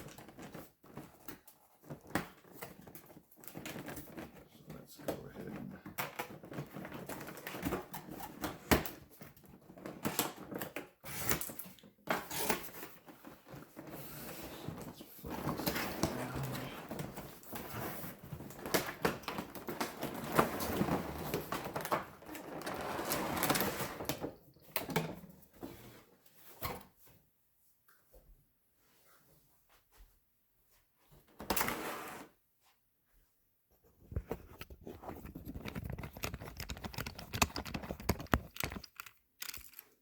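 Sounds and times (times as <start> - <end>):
cardboard packaging rustling: 33.9 - 40.0
clicks and knocks: 34.2 - 40.0.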